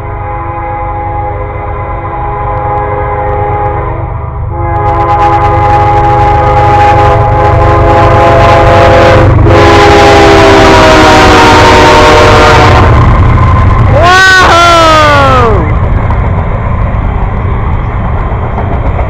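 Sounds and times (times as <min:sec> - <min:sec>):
locomotive horn chord: 0:00.0 - 0:13.1
freight train rumble: 0:00.0 - 0:19.0.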